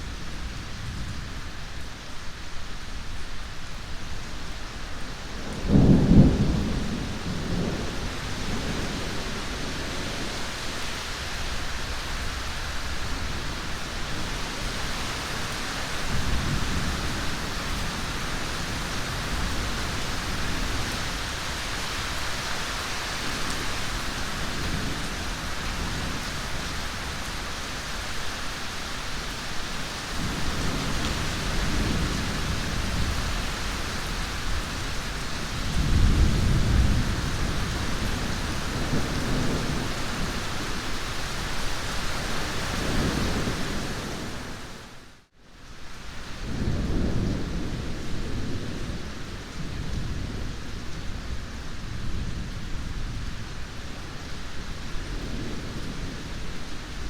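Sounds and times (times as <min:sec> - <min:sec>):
heavy rain: 0:00.0 - 0:57.0
rolling thunder: 0:05.3 - 0:10.6, 0:30.2 - 0:40.8.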